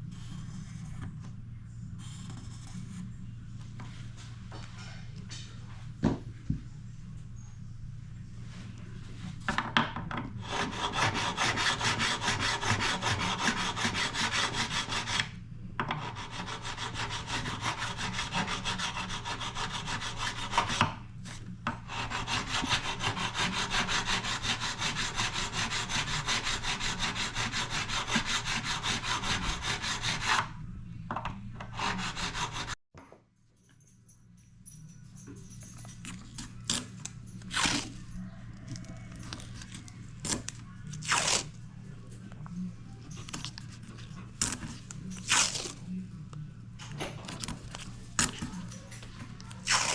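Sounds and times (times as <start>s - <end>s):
hand tool rasping on wood: 10.4s - 15.3s, 16.0s - 20.8s, 21.9s - 30.4s, 31.8s - 32.8s.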